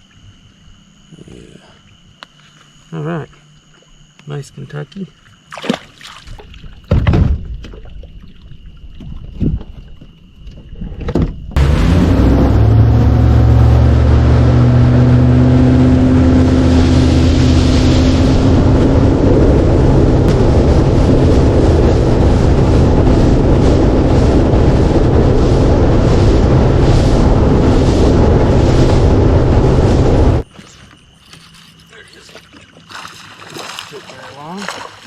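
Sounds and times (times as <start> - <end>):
outboard motor running: 7.6 - 35.0
wind on microphone: 8.9 - 10.0, 10.6 - 30.5.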